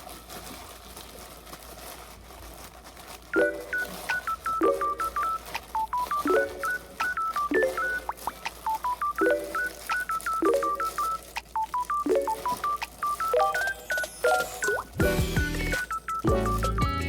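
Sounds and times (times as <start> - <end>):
bouncy plinking background music: 4.6 - 17.0.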